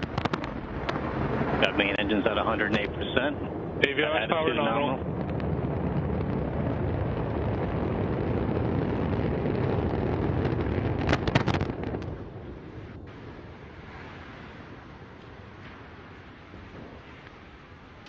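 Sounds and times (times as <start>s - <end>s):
sharp cracks: 0.0s - 3.4s, 5.1s - 13.2s
rocket engine roar: 0.0s - 18.0s.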